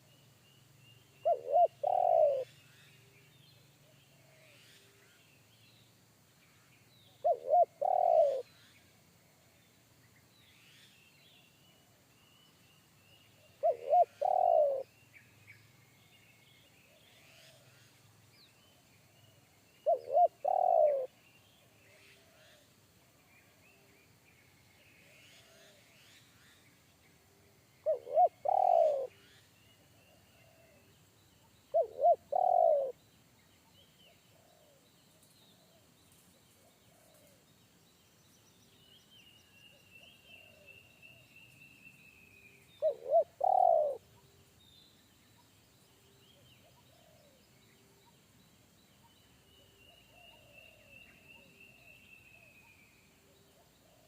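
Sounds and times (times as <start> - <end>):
small birds chirping: 0.0 - 54.0
dove cooing: 1.2 - 2.5, 7.2 - 8.5, 13.6 - 14.9, 19.8 - 21.1, 27.8 - 29.2, 31.7 - 33.0, 42.8 - 44.0.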